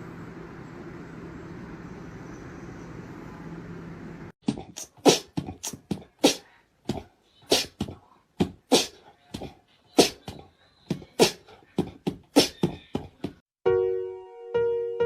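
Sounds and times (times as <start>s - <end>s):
pet animal making sharp noisy sounds: 4.6s - 8.0s, 8.7s - 13.0s.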